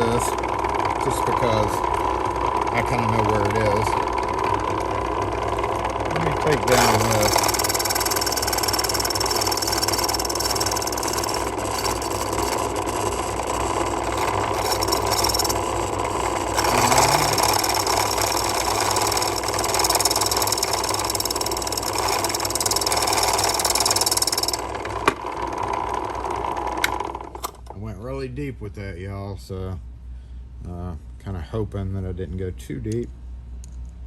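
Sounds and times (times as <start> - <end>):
key-cutting machine hum: 0.0 - 27.4
cutter whining on metal: 5.7 - 24.7.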